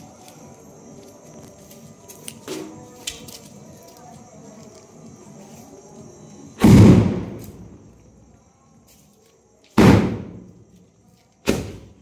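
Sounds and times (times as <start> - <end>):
firecracker bangs: 6.6 - 7.8, 9.8 - 10.6, 11.4 - 12.0.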